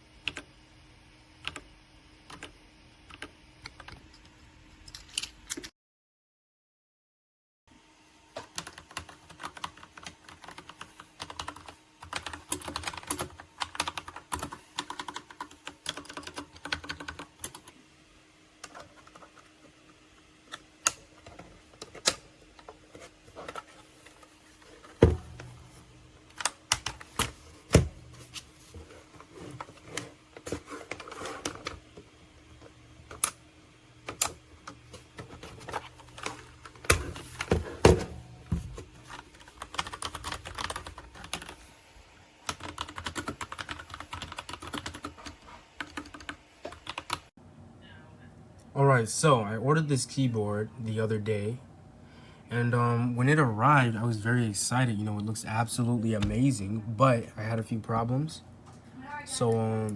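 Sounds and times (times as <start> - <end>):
mechanical keyboard typing: 0.2 - 0.5, 1.4 - 1.7, 2.3 - 4.0, 8.4 - 17.7, 26.3 - 27.8, 39.1 - 41.6, 42.5 - 47.3.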